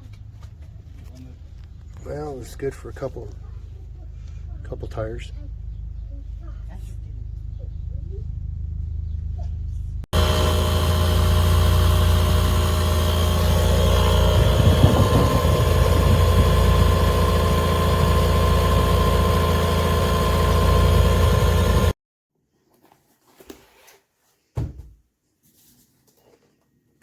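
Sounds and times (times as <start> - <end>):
air compressor buzzing drone: 10.1 - 22.0.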